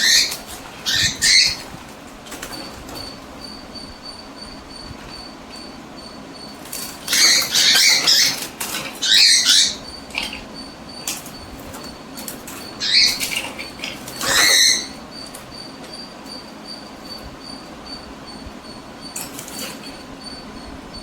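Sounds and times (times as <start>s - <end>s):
cockatiels squawking: 0.0s - 3.2s, 6.7s - 17.6s
wing flaps: 0.0s - 4.0s.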